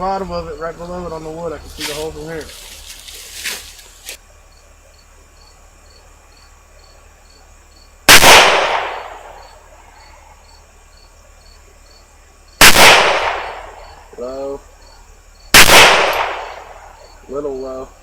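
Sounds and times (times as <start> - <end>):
insects chirping: 0.0 - 18.0
handgun shots with echo: 8.1 - 9.4, 12.6 - 13.8, 15.6 - 16.8.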